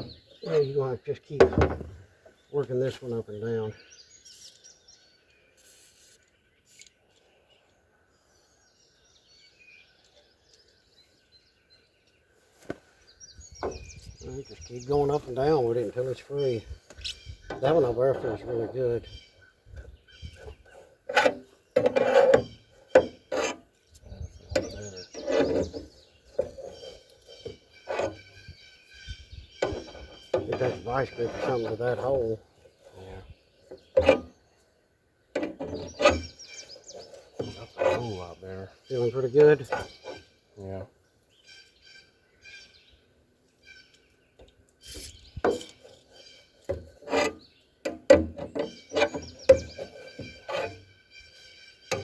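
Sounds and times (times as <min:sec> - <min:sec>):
metal hinge grating: 0:13.6 - 0:33.0, 0:33.7 - 0:34.4, 0:35.4 - 0:40.3, 0:44.8 - 0:52.0
thin squeak: 0:20.2 - 0:23.6, 0:24.5 - 0:28.6, 0:29.6 - 0:32.4, 0:35.4 - 0:40.2, 0:48.5 - 0:52.0.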